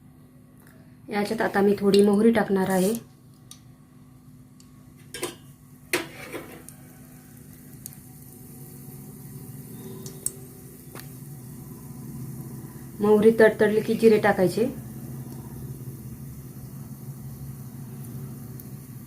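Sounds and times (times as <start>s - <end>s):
seeds sizzling in hot oil: 1.2s - 19.0s.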